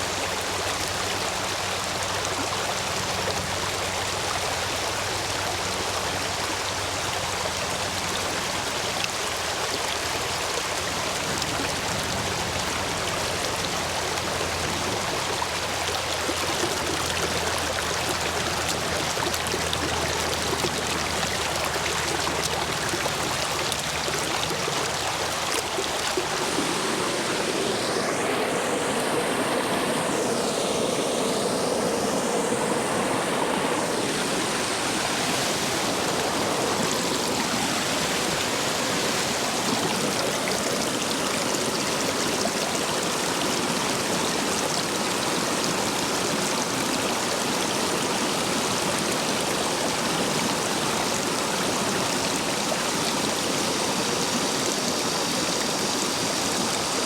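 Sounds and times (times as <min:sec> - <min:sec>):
stream water rushing: 0:00.0 - 0:57.0.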